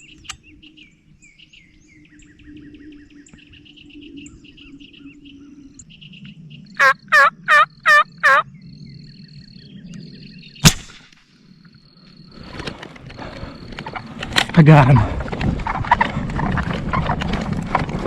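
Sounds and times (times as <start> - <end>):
songbirds chirping: 0.0 - 17.2
turkey yelps: 6.8 - 8.4
air rifle firing crack: 10.6 - 11.2.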